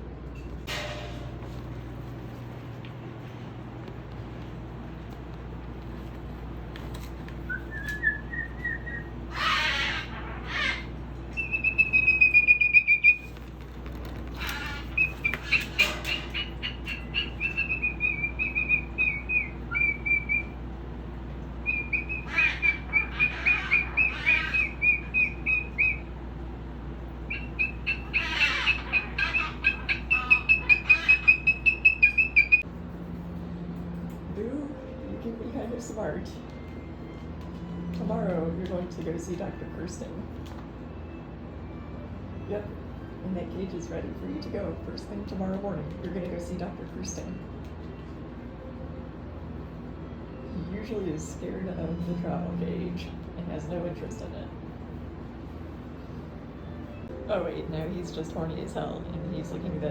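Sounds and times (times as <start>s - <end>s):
bird chirping rapidly: 8.0s - 13.3s, 14.5s - 20.6s, 21.6s - 26.1s, 27.3s - 32.6s
bird squawking harshly: 9.3s - 13.2s, 14.4s - 20.5s, 21.7s - 26.1s, 27.3s - 32.6s.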